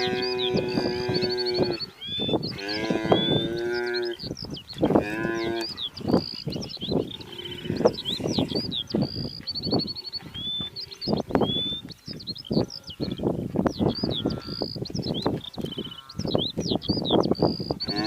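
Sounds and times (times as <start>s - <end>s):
wildebeest bellowing: 0.0s - 4.2s
birds chirping: 0.0s - 18.0s.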